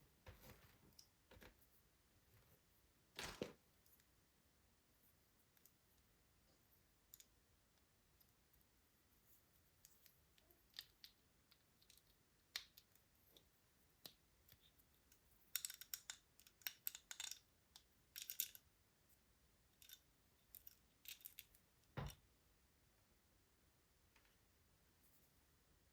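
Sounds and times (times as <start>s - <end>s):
plastic toys and packaging crinkling: 3.1s - 3.6s.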